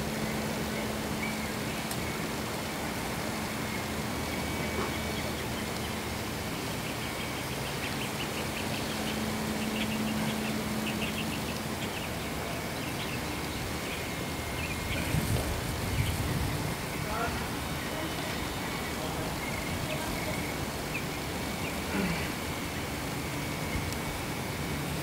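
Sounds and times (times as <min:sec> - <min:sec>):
low motor hum: 0:00.0 - 0:25.0.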